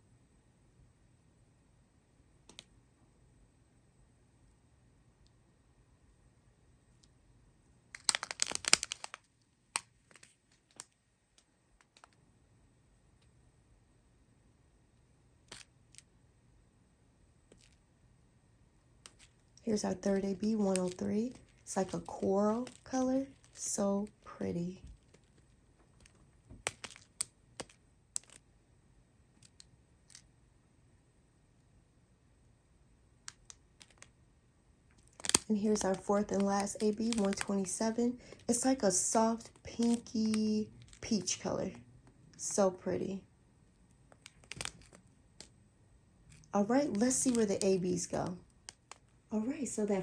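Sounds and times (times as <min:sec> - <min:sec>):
plastic bags crinkling and rattling: 0:08.0 - 0:10.9, 0:19.1 - 0:23.9, 0:35.0 - 0:41.4, 0:44.2 - 0:45.0, 0:46.4 - 0:47.9.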